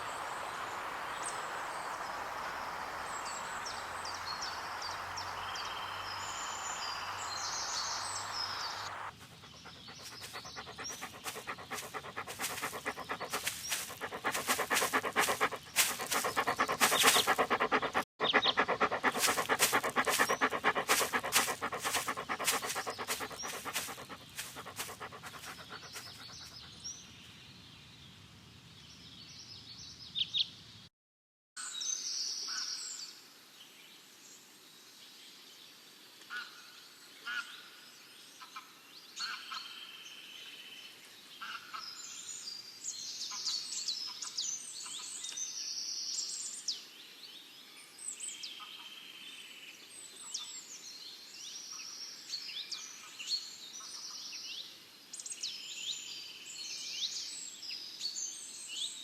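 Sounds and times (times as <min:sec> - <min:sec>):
small birds singing: 0:00.0 - 0:27.1.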